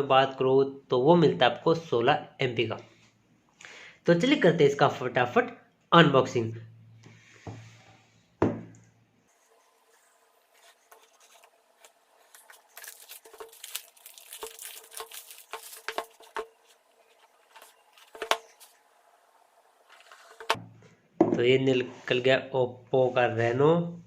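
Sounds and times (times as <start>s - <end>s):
packaging rustling and scraping: 9.3s - 18.8s, 19.8s - 20.6s.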